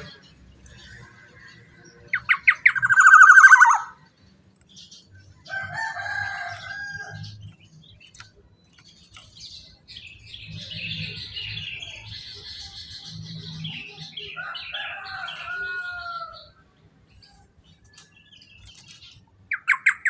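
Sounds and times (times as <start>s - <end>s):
bird calling: 0.0s - 4.1s, 19.5s - 20.0s
bird chattering notes: 2.1s - 4.1s, 19.5s - 20.0s.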